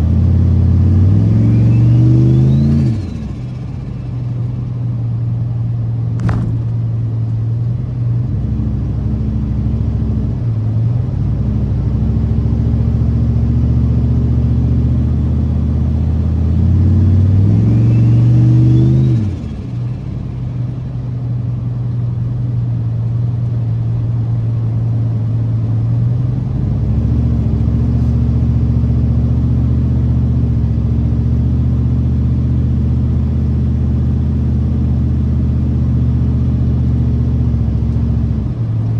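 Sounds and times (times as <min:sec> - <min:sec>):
car engine accelerating: 0:00.0 - 0:07.6, 0:11.7 - 0:22.2, 0:26.0 - 0:38.8
turbo whistle: 0:01.3 - 0:03.2.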